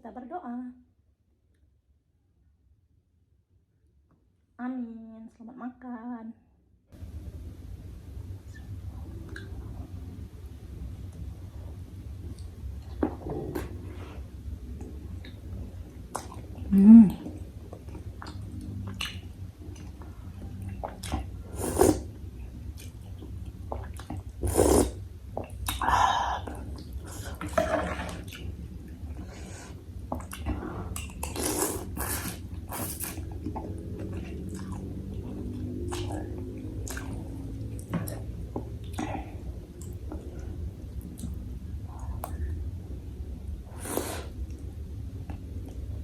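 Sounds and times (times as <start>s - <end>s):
slurping broth: 20.9s - 22.1s, 23.8s - 25.0s, 27.0s - 28.4s, 30.3s - 34.9s, 43.7s - 44.4s
chewing: 30.1s - 39.2s.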